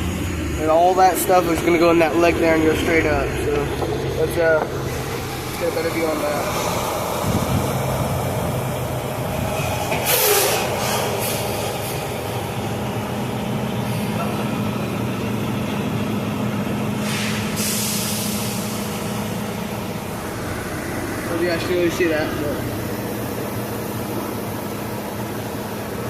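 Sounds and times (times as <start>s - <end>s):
diesel truck engine idling: 0.0s - 26.0s
air release hiss: 9.6s - 12.2s, 17.0s - 19.4s.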